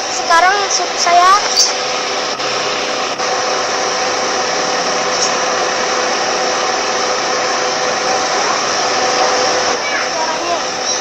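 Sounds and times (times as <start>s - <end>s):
car air blower rushing: 0.0s - 11.0s.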